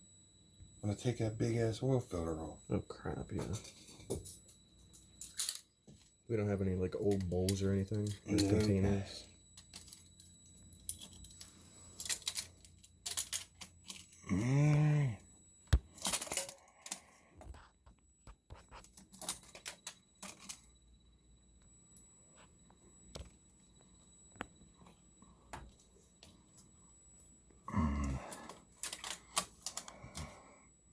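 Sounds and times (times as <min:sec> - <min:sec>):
person humming: 0:14.2 - 0:15.2, 0:27.7 - 0:28.4
objects clicking and rattling: 0:28.4 - 0:30.4.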